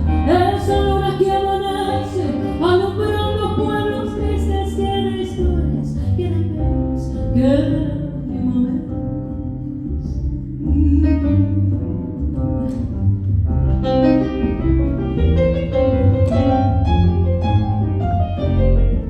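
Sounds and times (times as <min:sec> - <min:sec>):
steady bass line: 0:00.0 - 0:19.0
live band instrumental: 0:13.5 - 0:19.0.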